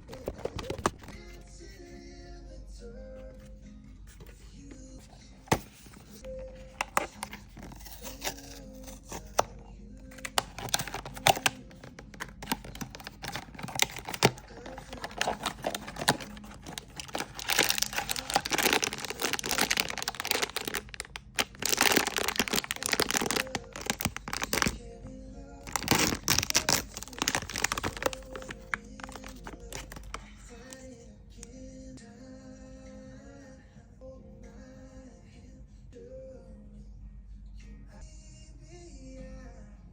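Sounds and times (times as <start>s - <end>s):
packaging crinkling and tearing: 0.0s - 1.2s, 5.5s - 24.8s, 25.6s - 30.8s
soft background music: 0.0s - 39.9s.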